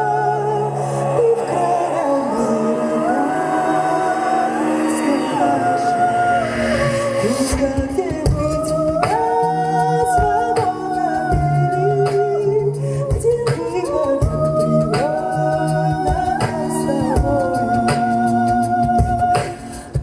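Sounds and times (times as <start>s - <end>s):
a cappella group singing: 0.0s - 20.0s.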